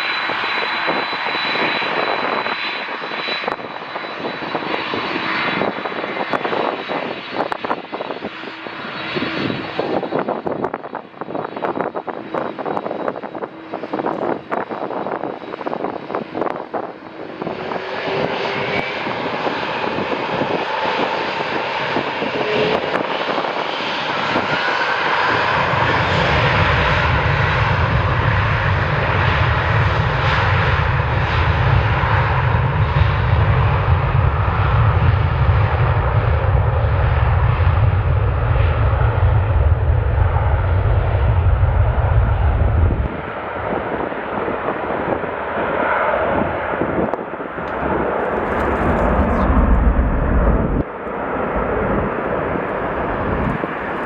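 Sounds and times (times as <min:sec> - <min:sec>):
jet engines roaring: 0:00.0 - 0:54.0
deep low rumble: 0:27.0 - 0:43.2, 0:46.9 - 0:54.0.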